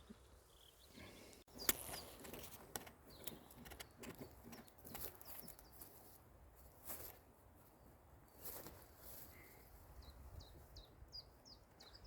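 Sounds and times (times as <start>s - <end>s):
small birds chirping: 0.0s - 6.1s, 7.6s - 12.0s
clicks and rustles: 1.5s - 5.6s.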